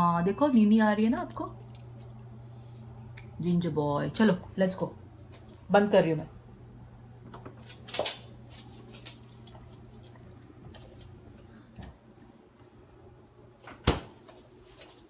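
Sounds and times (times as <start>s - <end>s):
steady low hum: 0.0s - 15.0s
refrigerator door shutting thud: 13.7s - 14.2s.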